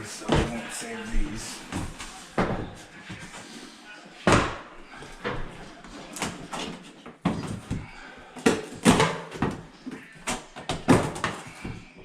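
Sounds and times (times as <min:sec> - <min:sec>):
floor planks knocking and clattering: 0:00.2 - 0:00.7, 0:04.2 - 0:11.9.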